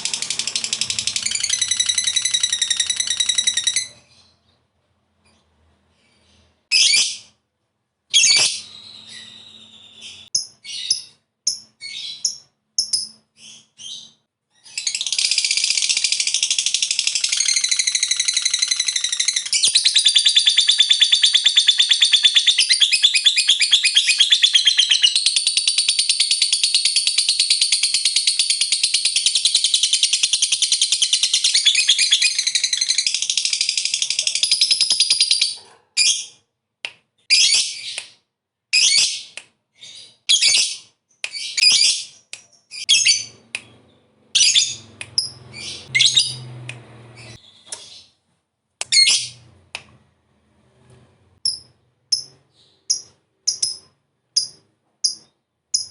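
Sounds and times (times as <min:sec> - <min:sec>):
lovebird chattering trill: 0:00.0 - 0:04.0, 0:14.8 - 0:35.6, 0:51.5 - 0:55.9
lovebird chirps: 0:00.0 - 0:04.6, 0:08.1 - 0:36.3, 0:38.8 - 0:46.5, 0:48.9 - 0:49.4, 0:51.4 - 0:55.9.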